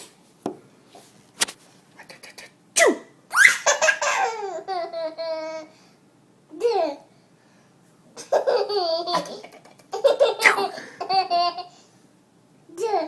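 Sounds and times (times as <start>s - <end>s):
child squealing: 3.3s - 4.0s
young child laughing: 8.2s - 11.7s.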